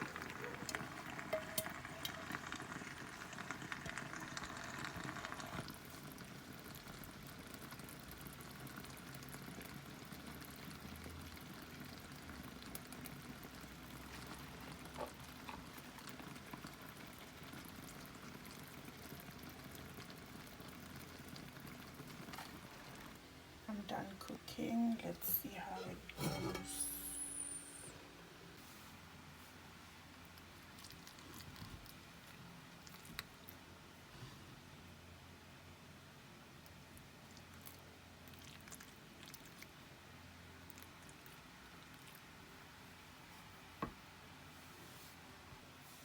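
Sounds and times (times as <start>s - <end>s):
pot of food bubbling: 0.0s - 27.9s, 29.6s - 34.7s.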